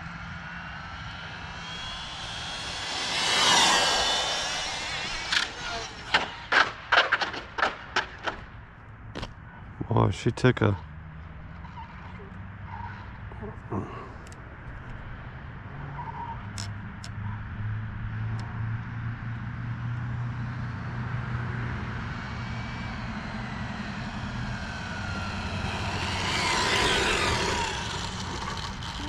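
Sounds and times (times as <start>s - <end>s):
rc car motor whine: 0.8s - 7.4s, 21.9s - 29.0s
steady low hum: 20.8s - 29.0s.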